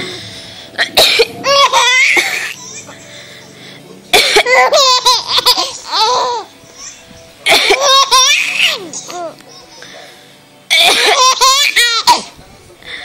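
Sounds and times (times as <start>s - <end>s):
person coughing: 0.8s - 1.4s, 4.2s - 4.7s
baby squealing laugh: 1.4s - 2.8s, 7.8s - 9.0s.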